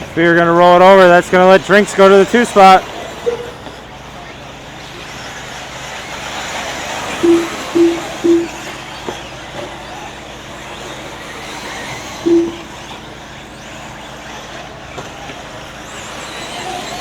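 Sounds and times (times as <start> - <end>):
electric rc cars racing: 0.0 - 17.0
low electronic beeps: 7.2 - 8.8, 12.2 - 12.8.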